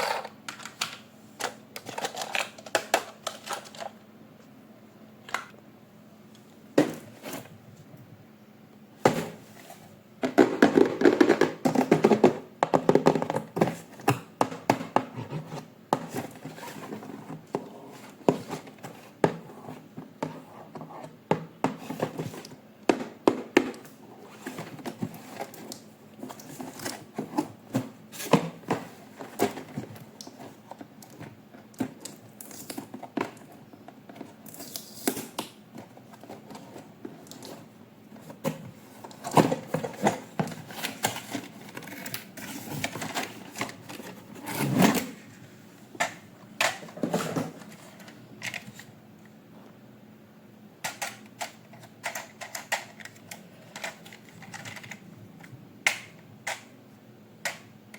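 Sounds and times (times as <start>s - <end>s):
plastic toy parts clattering: 0.0s - 4.0s, 50.8s - 55.5s.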